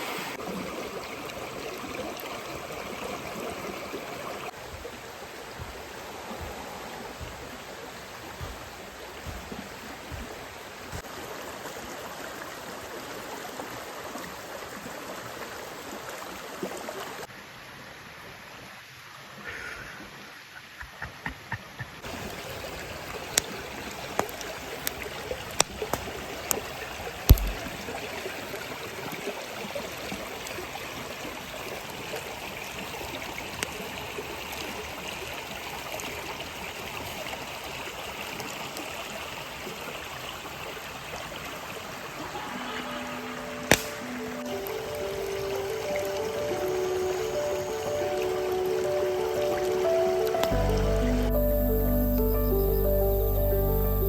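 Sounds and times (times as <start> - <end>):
mountain stream rushing: 0.0 - 17.9, 22.0 - 51.8
sharp clicks and taps: 20.8 - 22.0, 27.3 - 27.7.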